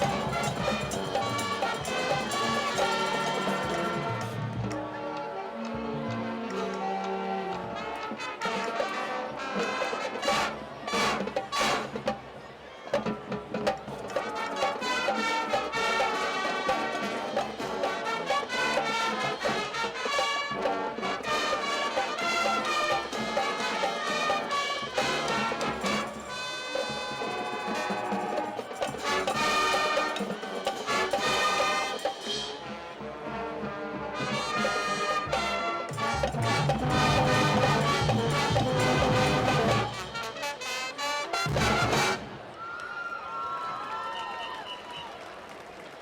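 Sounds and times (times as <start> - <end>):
sharp percussion strikes: 0.0 - 4.7, 13.7 - 32.8, 34.4 - 40.8
brass band playing: 0.0 - 42.6.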